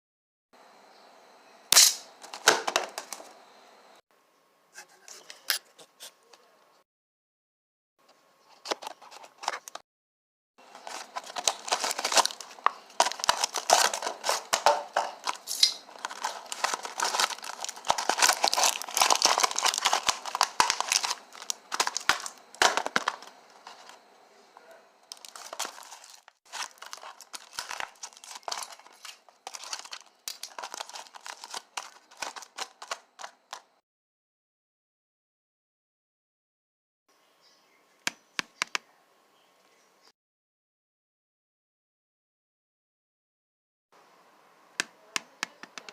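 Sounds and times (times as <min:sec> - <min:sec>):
packaging crinkling and tearing: 0:10.6 - 0:24.0, 0:25.1 - 0:33.7.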